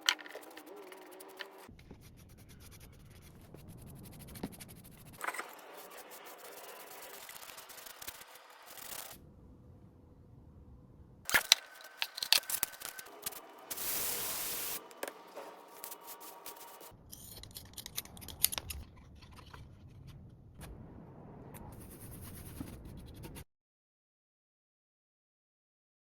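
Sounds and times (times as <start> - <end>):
steady hiss: 13.2 - 14.9.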